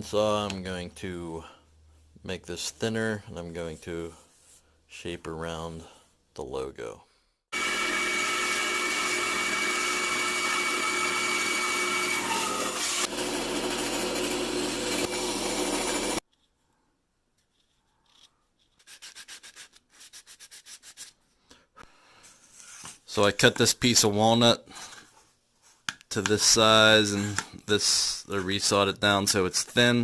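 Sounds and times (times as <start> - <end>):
faint rubbing strokes: 4.1 - 4.8
bandsaw cutting wood with whine: 7.5 - 16.2.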